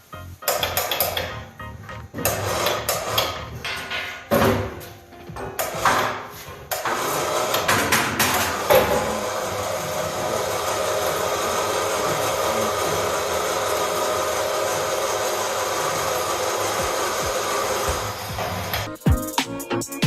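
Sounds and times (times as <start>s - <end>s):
steady machine whir: 6.7s - 18.9s.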